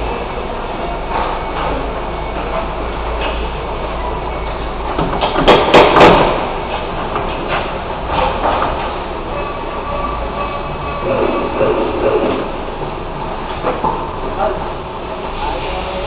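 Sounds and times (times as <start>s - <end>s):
steady rumbling background noise: 0.0s - 16.0s
loud knocks: 5.0s - 6.5s.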